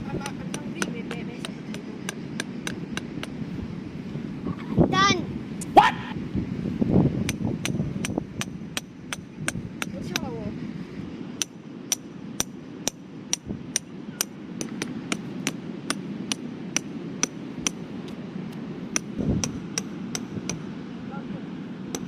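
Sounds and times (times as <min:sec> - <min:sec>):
low steady rumble: 0:00.0 - 0:22.0
metallic tapping: 0:18.9 - 0:20.7.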